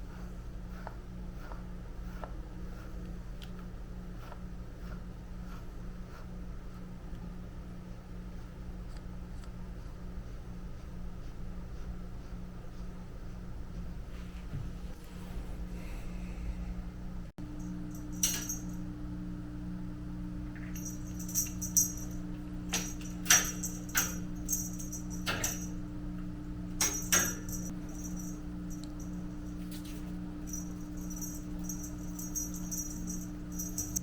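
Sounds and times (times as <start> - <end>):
low hum: 13.8 - 34.0
light metallic jingling: 17.6 - 18.8, 20.6 - 25.8, 26.8 - 34.0.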